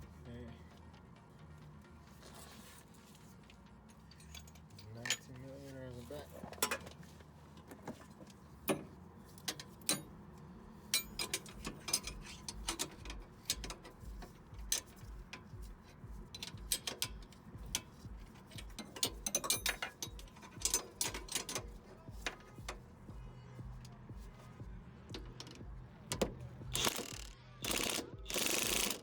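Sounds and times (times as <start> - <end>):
hand ratchet clicking: 9.4 - 22.9, 25.1 - 29.0.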